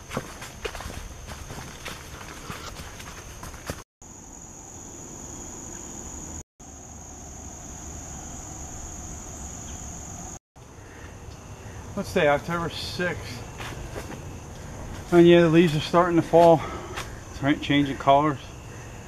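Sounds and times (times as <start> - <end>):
footsteps on a trail: 0.0 - 3.9, 13.2 - 17.3
insects trilling: 0.0 - 19.0.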